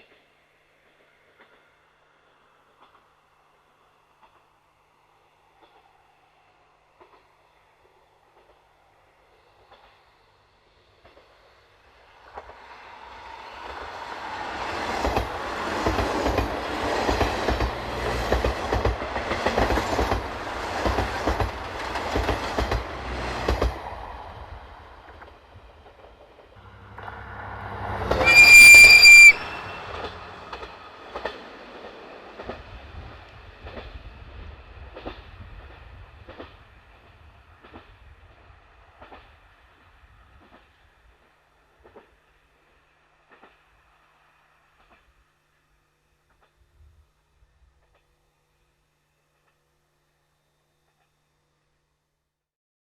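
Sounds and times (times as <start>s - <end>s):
train wheels clicking over rail joints: 9.3s - 10.2s, 12.2s - 43.8s, 44.7s - 45.2s, 46.2s - 46.8s
train horn: 26.6s - 30.6s.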